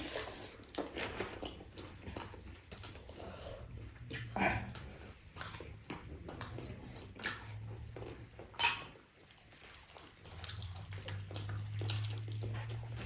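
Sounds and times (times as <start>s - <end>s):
cutlery and dishes clinking: 8.5s - 9.0s.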